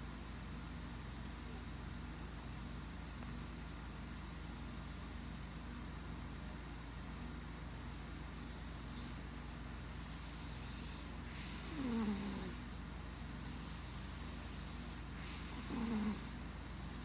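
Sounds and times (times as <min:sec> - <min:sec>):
steady low hum: 0:00.0 - 0:17.0
person snoring: 0:10.2 - 0:12.6, 0:13.5 - 0:16.3.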